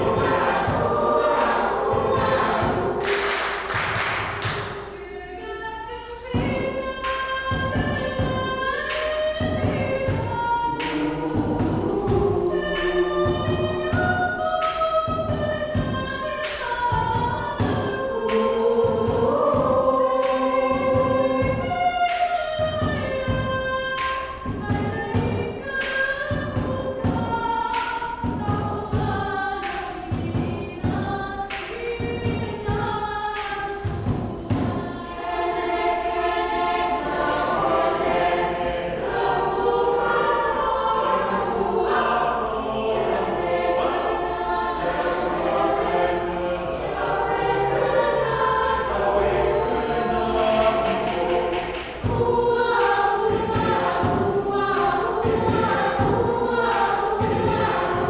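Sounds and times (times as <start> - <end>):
frame drums beating: 0.0 - 5.0, 6.3 - 35.1, 46.9 - 58.0
mixed choir singing folk song: 0.0 - 58.0.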